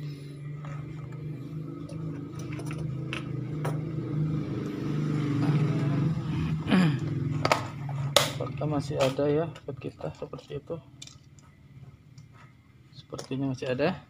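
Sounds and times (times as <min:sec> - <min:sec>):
vehicle engine running: 0:00.0 - 0:10.4.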